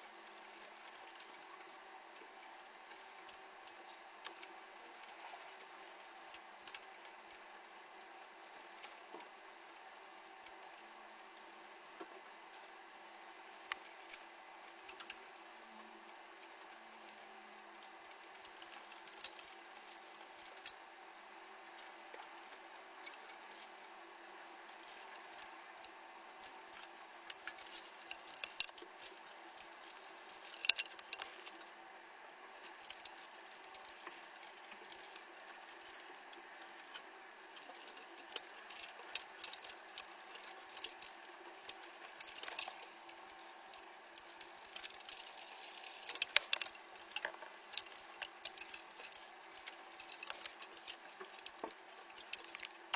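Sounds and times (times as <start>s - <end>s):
faint steady hum: 0.0s - 52.9s
computer parts and tools rattling: 26.7s - 31.8s, 32.6s - 52.9s.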